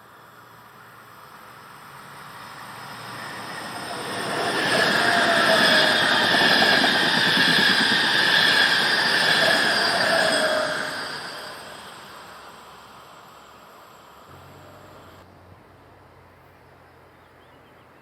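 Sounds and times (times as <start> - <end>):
train passing with loud rumble: 0.2 - 15.2
steady high-pitched tones: 1.4 - 15.2.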